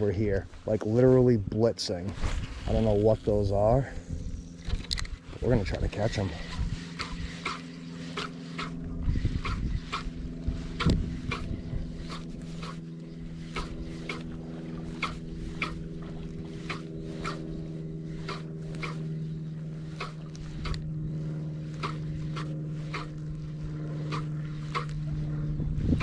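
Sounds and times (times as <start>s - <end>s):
low motor hum: 0.0s - 26.0s
sharp ticks: 6.9s - 10.2s, 10.8s - 14.3s, 15.0s - 15.9s, 16.6s - 17.6s, 18.2s - 19.2s, 19.9s - 20.9s, 21.7s - 23.4s, 24.0s - 25.1s.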